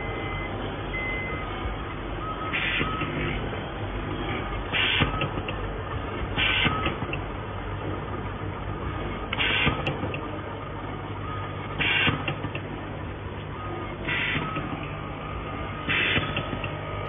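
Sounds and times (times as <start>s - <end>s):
machine humming: 0.0s - 17.0s.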